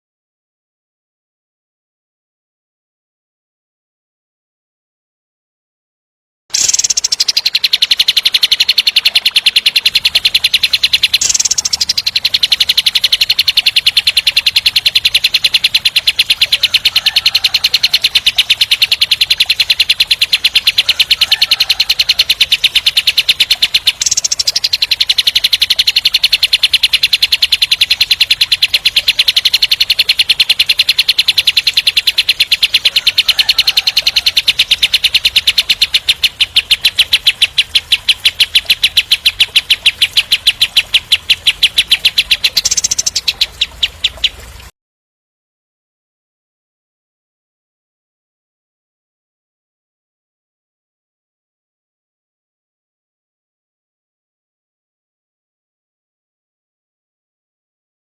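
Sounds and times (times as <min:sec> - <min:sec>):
faint lower bird chirps: 0:06.5 - 0:44.7
songbird rapid rattling trill: 0:06.5 - 0:44.7.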